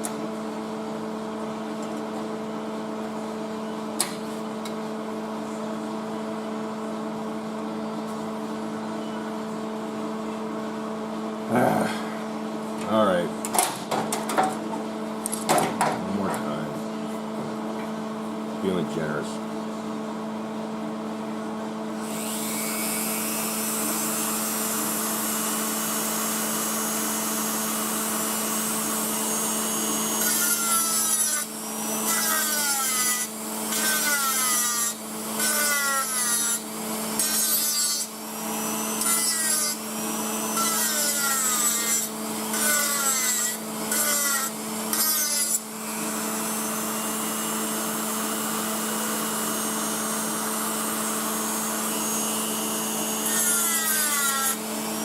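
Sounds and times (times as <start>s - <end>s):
steady hum: 0.0s - 30.1s
power tool whining: 21.9s - 55.0s.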